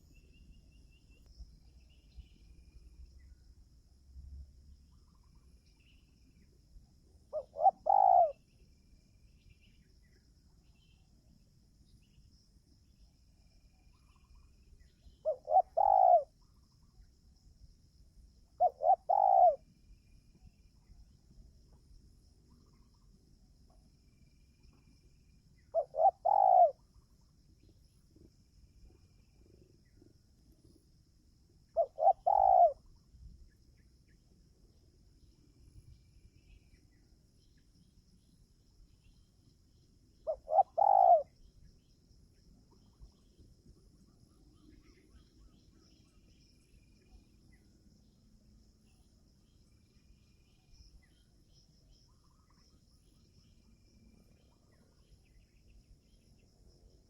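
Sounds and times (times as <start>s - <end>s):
faint insect trill: 0.0s - 57.0s
dove cooing: 7.3s - 8.4s, 15.2s - 16.4s, 18.6s - 19.6s, 25.7s - 26.8s, 31.8s - 32.9s, 40.2s - 41.4s.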